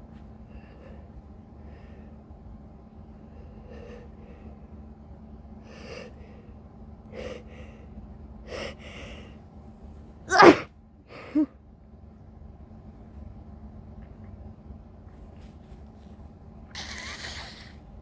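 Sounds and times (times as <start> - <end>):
person sneezing: 10.3 - 10.7.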